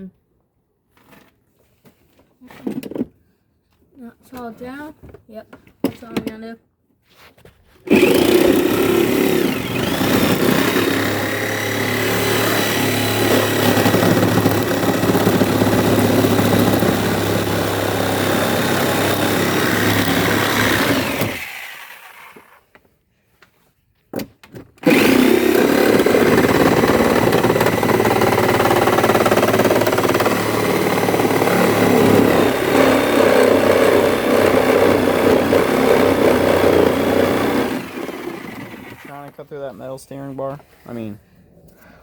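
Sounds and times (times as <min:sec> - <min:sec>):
power tool whining: 0:07.9 - 0:22.6, 0:24.8 - 0:39.3.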